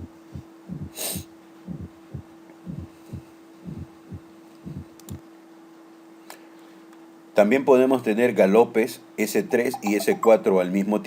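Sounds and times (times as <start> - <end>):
heartbeat thuds: 0.0 - 5.2
steady hum: 0.0 - 5.4, 8.3 - 11.0.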